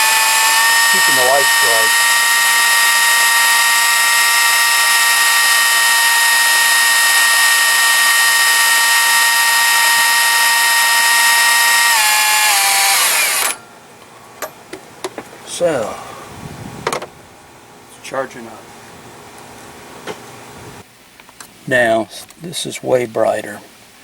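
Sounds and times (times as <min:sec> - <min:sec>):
electric drill whining: 0:00.0 - 0:13.6.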